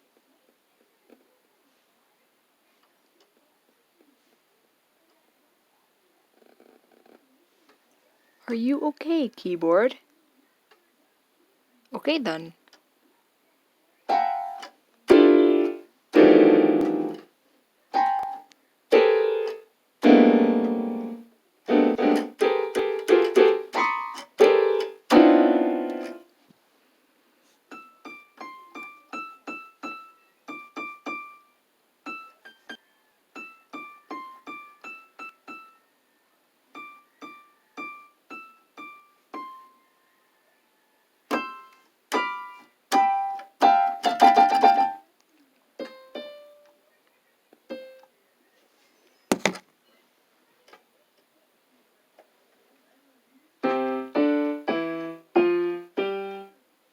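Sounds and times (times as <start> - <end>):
electronic keyboard notes: 14.1 - 17.3, 17.9 - 26.2, 53.6 - 56.6.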